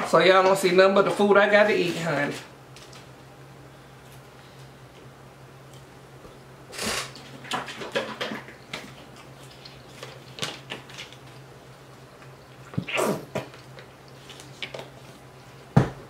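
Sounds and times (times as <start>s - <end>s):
faint steady hum: 0.0s - 16.0s
food rustling: 7.1s - 15.6s
wet chewing clicks and crackles: 8.0s - 15.3s.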